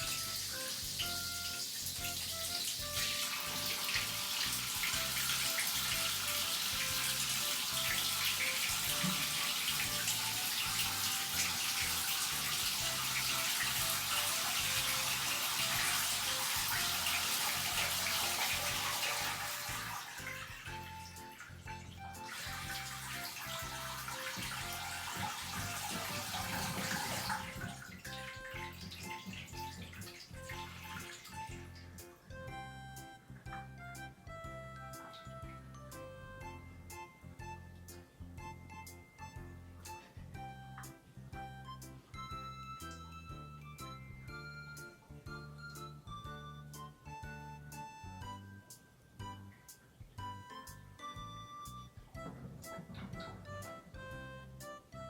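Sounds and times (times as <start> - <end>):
tap running into bathtub: 0.0 - 32.0, 52.2 - 54.0.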